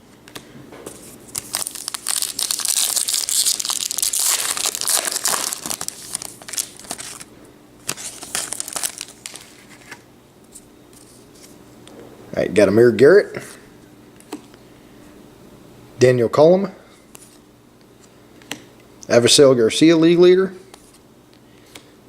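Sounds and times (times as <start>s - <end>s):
plastic wrapper crinkling and tearing: 1.3s - 10.0s.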